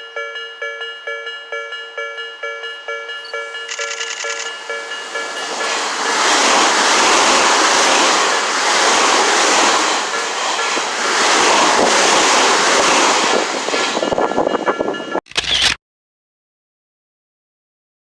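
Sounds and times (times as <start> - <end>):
level crossing warning bell: 0.0 - 15.2
train wheels rushing on rail: 3.4 - 15.2.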